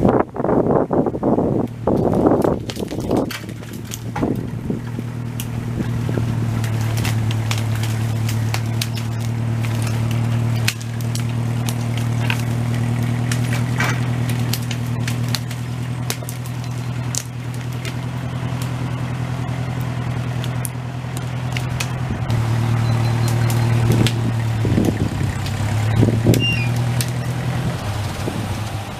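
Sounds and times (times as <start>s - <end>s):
engine idling: 0.0s - 28.9s
branches crackling and snapping: 1.6s - 28.9s.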